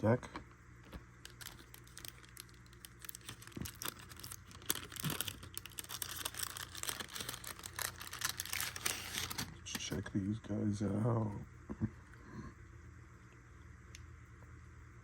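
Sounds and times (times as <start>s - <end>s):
plastic wrapping crinkling: 0.8s - 9.9s.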